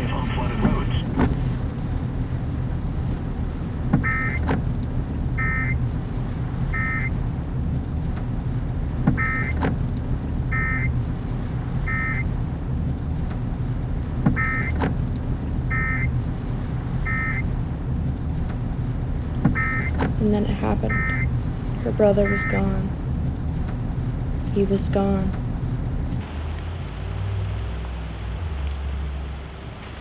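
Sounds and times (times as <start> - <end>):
steady low rumble: 19.2 - 23.2, 24.4 - 30.0
electronic beeping: 19.3 - 23.2.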